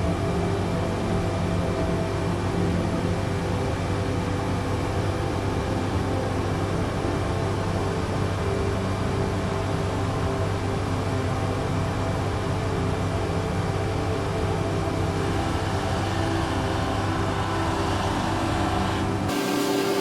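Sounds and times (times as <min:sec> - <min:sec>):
woodworking machine running: 0:15.2 - 0:20.0.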